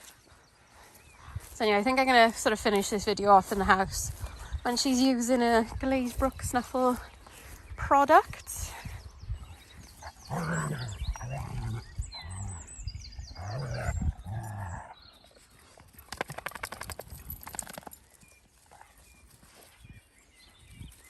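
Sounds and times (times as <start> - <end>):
faint birdsong: 0.0 - 21.0
dog growling grumbles: 10.2 - 15.0
rapid clicking and scuffling: 16.0 - 18.0.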